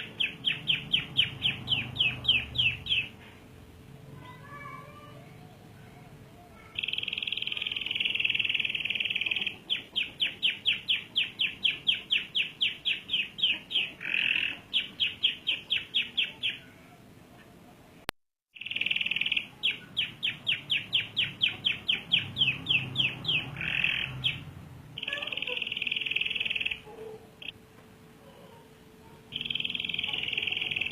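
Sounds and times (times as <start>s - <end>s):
canary singing trills: 0.0s - 3.3s, 6.6s - 16.9s, 18.6s - 27.6s, 29.1s - 30.9s.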